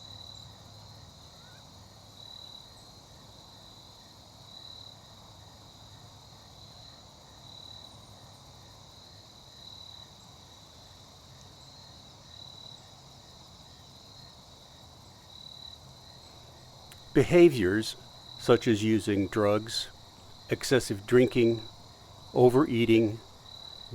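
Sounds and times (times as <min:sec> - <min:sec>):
crickets trilling: 0:11.5 - 0:23.9.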